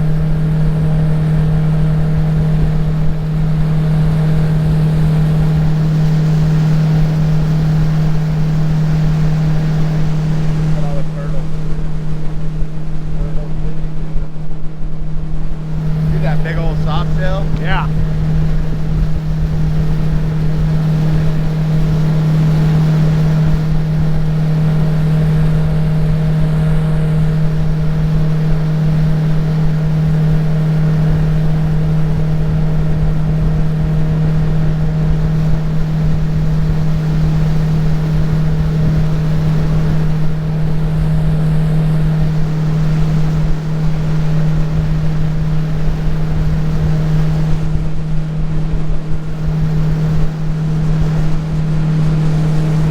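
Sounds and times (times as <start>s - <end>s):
boat engine drone: 0.0s - 52.9s
water rushing: 0.0s - 52.9s.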